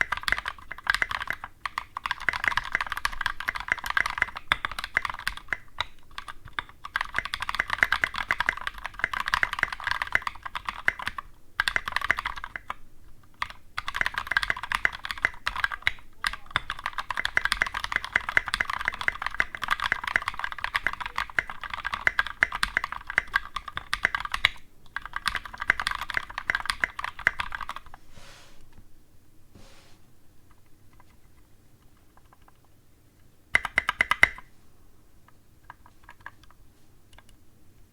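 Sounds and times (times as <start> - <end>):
fast typing on mechanical keyboard: 0.0 - 27.9, 33.5 - 34.4, 35.7 - 36.6.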